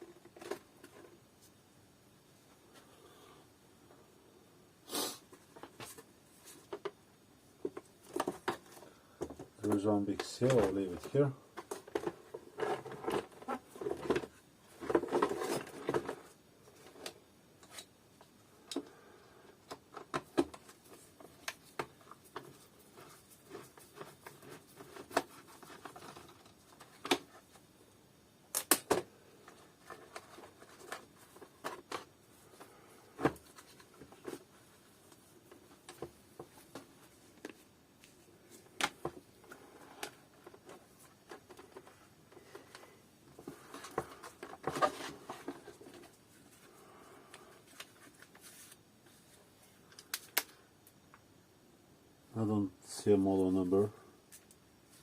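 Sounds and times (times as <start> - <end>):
plastic parts rustling and clicking: 7.6 - 17.9, 19.5 - 27.6, 28.5 - 37.6, 38.6 - 46.7.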